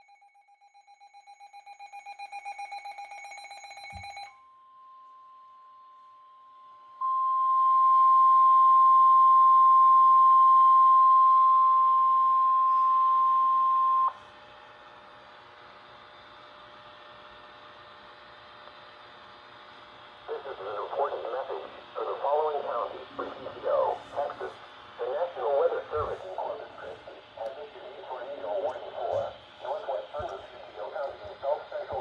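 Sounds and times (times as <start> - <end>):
weather radio alarm tone: 7.0 - 14.2, 20.3 - 32.0
radio static and hum: 18.6 - 32.0.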